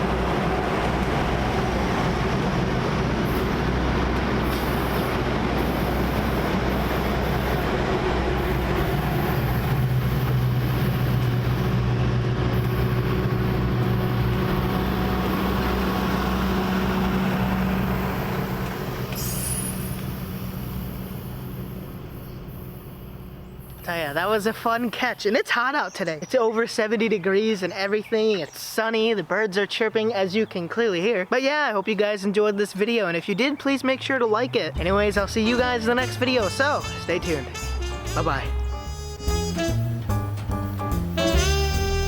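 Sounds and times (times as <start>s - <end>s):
train wheels rumbling on rails: 0.0s - 24.9s, 39.5s - 42.0s.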